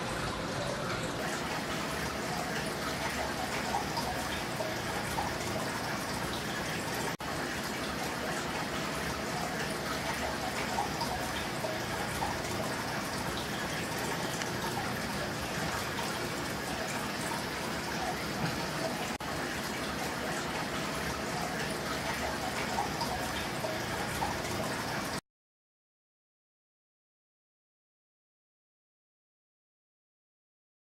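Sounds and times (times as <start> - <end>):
aquarium water splashing and trickling: 0.0 - 25.2.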